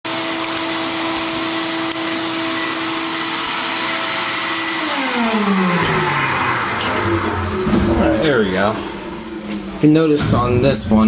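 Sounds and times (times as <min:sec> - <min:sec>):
motor hum: 0:00.1 - 0:11.0.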